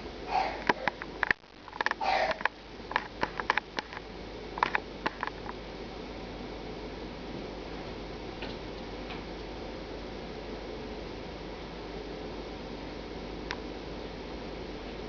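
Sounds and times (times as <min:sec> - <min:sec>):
short breathy noises: 0:00.3 - 0:00.9, 0:02.0 - 0:02.4.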